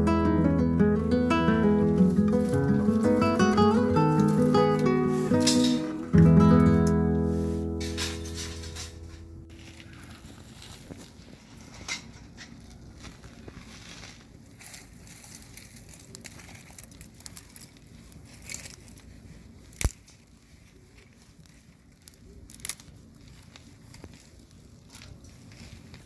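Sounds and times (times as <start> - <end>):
wood fire crackling: 0.0 - 11.4.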